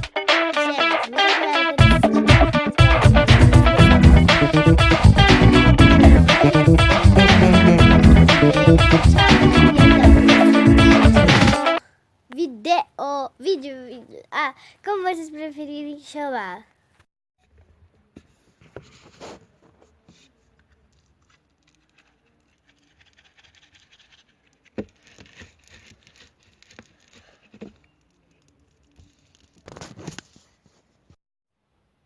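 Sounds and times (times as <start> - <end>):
scratching and tapping handling noise: 17.5 - 31.1.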